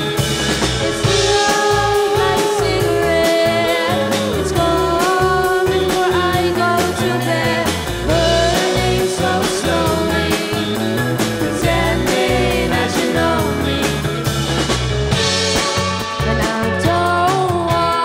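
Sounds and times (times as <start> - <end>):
rock band playing live: 0.0 - 18.0
lead vocal singing: 1.0 - 14.4.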